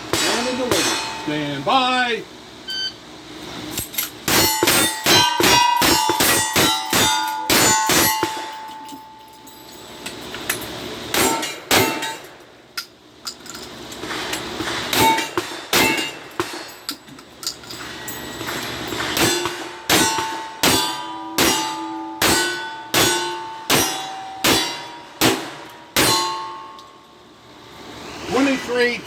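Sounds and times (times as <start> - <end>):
gunshots: 0.1 - 1.1, 23.0 - 26.2
steel targets clanging and ringing: 0.1 - 2.0, 3.7 - 27.3.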